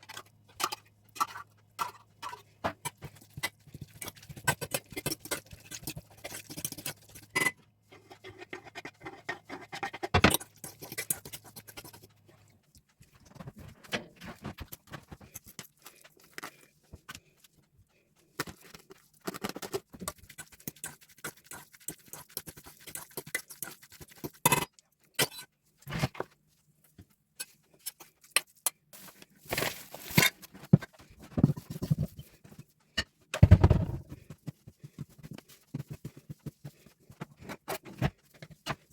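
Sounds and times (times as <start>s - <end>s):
utensils scraping and tapping: 0.0s - 12.1s, 19.3s - 26.0s.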